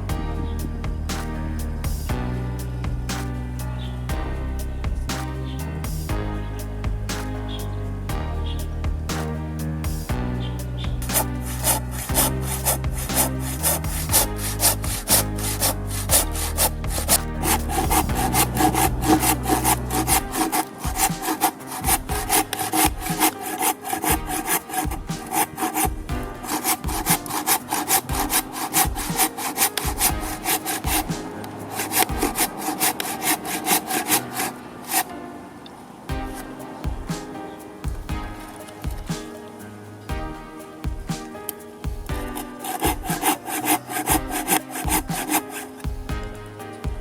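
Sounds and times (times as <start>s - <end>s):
hand saw cutting wood: 11.1s - 34.5s, 42.6s - 45.7s.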